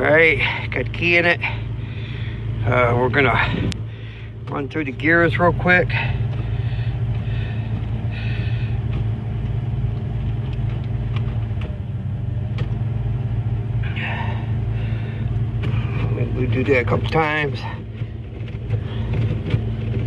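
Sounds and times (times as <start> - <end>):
car engine idling: 0.0 - 20.0
gear shifter clicks: 2.7 - 13.2, 14.5 - 20.0.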